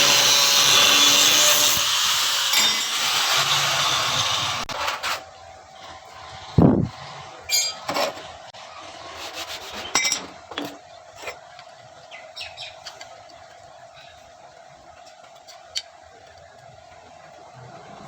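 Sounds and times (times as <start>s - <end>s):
faint steady hum: 5.4s - 18.0s.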